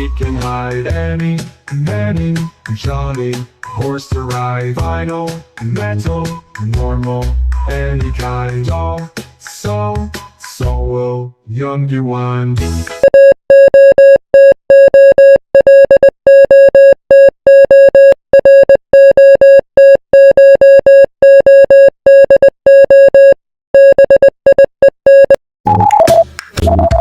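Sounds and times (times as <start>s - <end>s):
morse code beeps: 13.0s - 27.0s.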